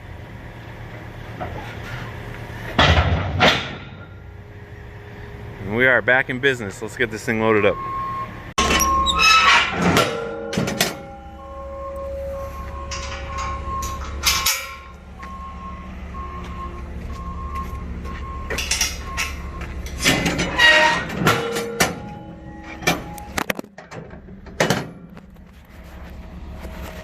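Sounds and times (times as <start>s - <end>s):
loud metal clanks and bangs: 2.7s - 4.4s, 8.6s - 11.4s, 12.8s - 15.0s, 18.5s - 25.3s
diesel engine idling: 3.9s - 9.0s, 11.0s - 20.2s
reversing alarm beeping: 7.3s - 23.5s.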